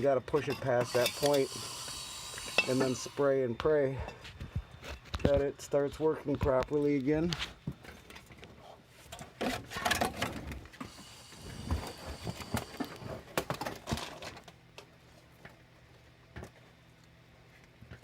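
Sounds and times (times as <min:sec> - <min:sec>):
low steady hum: 0:00.0 - 0:18.0
faint hiss: 0:00.7 - 0:03.4, 0:10.8 - 0:13.2.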